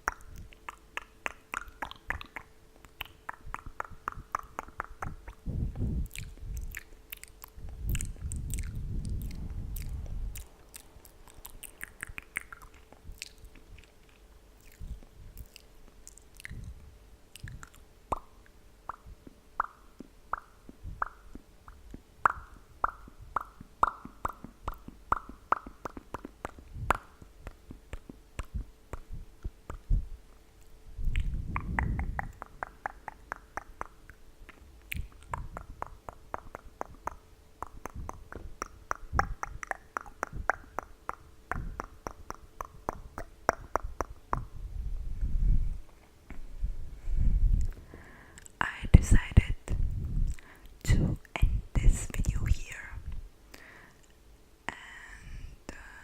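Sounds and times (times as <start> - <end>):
tongue clicking: 0.0 - 5.4, 6.0 - 29.9, 30.6 - 44.6
breath hitting microphone: 46.8 - 48.4, 53.6 - 54.0.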